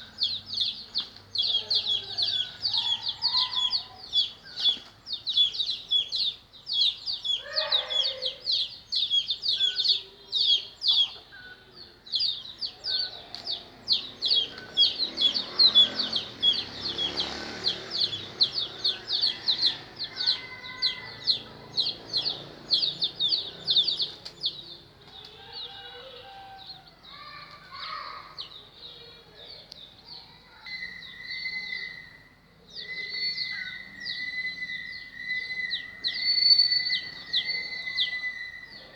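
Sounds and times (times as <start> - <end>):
chicks peeping: 0.0 - 38.9
low bird call: 30.6 - 38.9.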